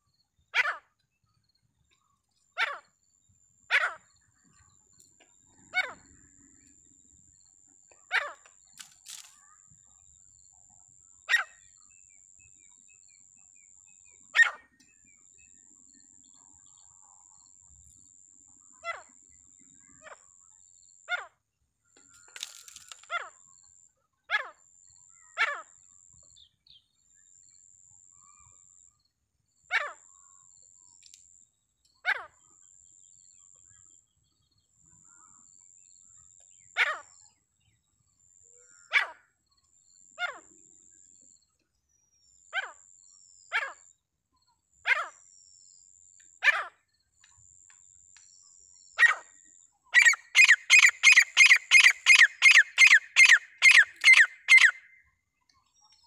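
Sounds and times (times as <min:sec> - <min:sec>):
partridge calls: 0:05.1 - 0:06.5, 0:50.0 - 0:55.0.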